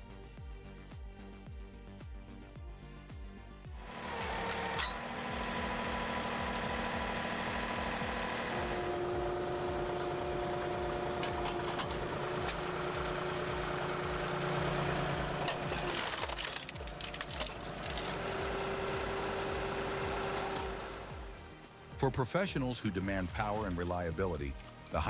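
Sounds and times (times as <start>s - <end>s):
wood processing machine running: 3.8s - 21.4s
wood cracking and splintering: 14.8s - 18.7s.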